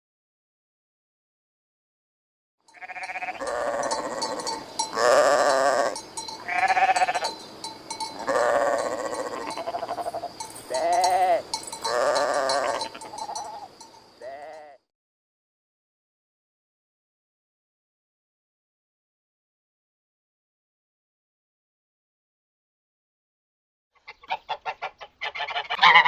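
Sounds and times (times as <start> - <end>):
faint steady high tone: 2.7 - 14.8
farm animals bleating: 2.7 - 14.8, 25.3 - 26.0.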